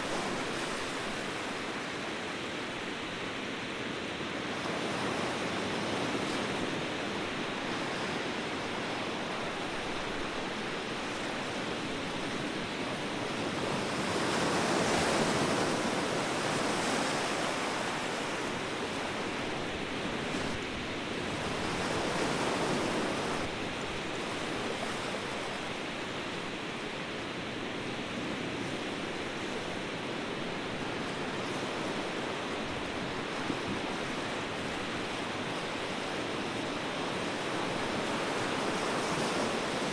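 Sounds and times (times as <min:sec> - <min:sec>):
ocean waves washing: 0:00.0 - 0:39.9.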